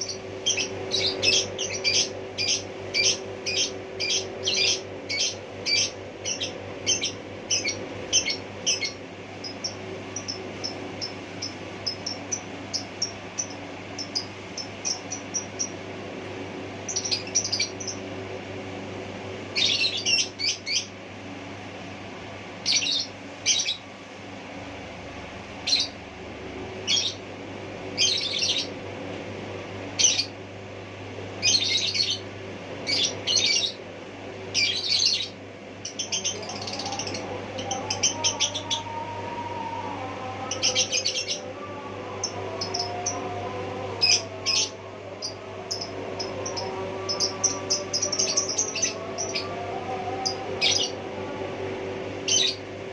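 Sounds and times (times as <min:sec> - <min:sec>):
steady low hum: 0:00.0 - 0:52.9
bird chirping: 0:44.1 - 0:49.5.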